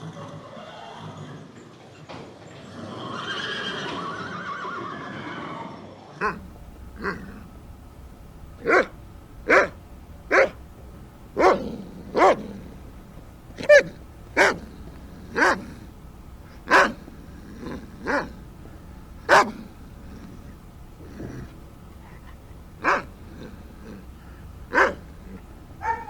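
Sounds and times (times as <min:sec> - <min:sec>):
dog barking: 0:06.2 - 0:26.0.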